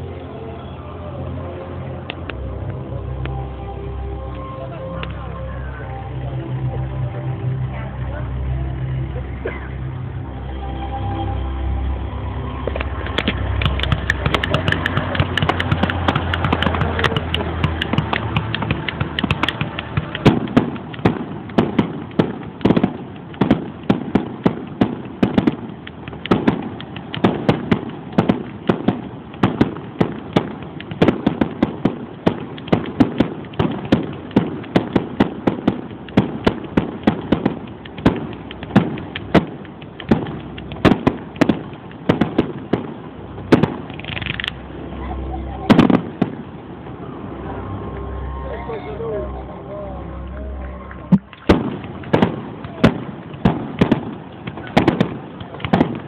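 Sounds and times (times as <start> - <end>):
fireworks bursting: 11.8 - 48.4, 50.5 - 56.0.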